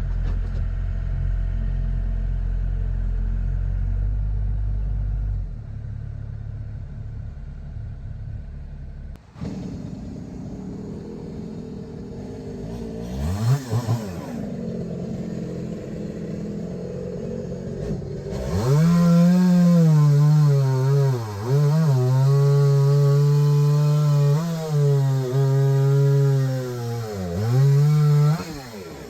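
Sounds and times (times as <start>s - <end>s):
chainsaw idling and cutting wood: 5.5s - 29.0s.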